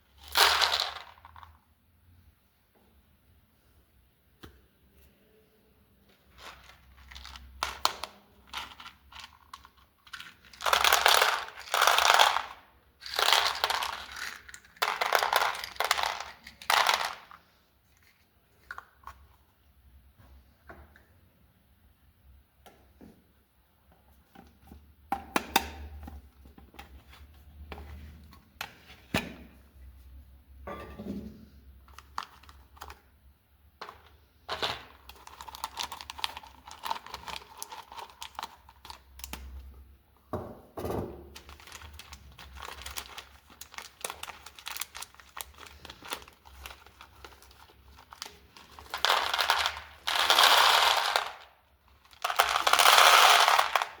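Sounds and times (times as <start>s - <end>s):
packaging crinkling: 6.3s - 17.4s, 34.0s - 39.6s, 41.3s - 54.0s.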